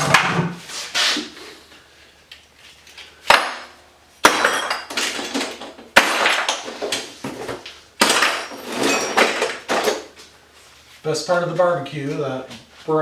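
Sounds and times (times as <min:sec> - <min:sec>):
scrap metal crashing into bucket: 0:03.3 - 0:10.1.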